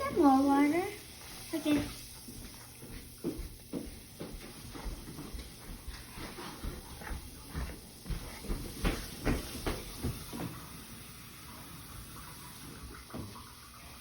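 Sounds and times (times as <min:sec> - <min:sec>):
faint steady hiss: 0:00.0 - 0:14.0.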